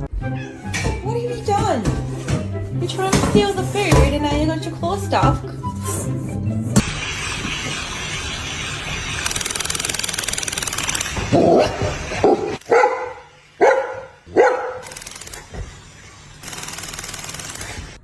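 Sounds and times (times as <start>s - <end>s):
dog barking: 12.7s - 14.9s.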